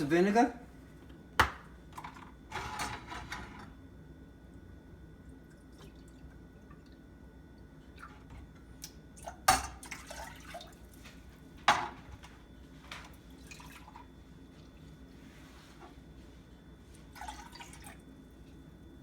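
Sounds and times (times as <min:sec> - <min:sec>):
liquid pouring: 0:05.3 - 0:10.9, 0:17.0 - 0:18.0.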